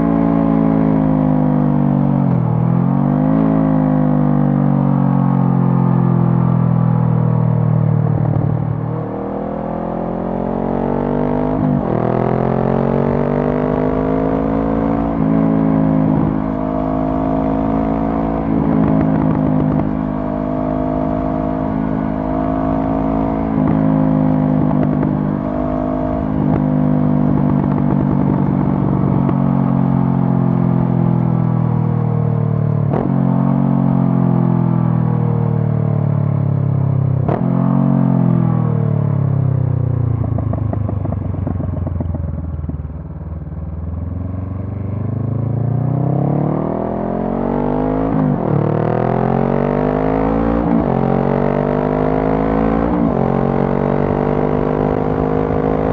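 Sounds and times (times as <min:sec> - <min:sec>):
motorcycle engine through gear changes: 0:00.0 - 0:55.9.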